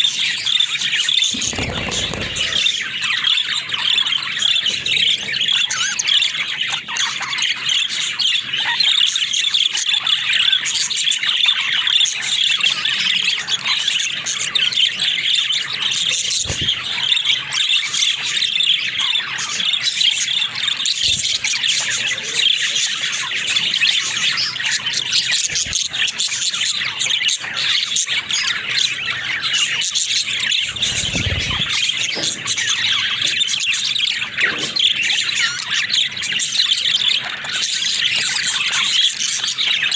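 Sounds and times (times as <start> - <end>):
budgerigars chattering: 1.2 - 2.9, 15.8 - 39.9.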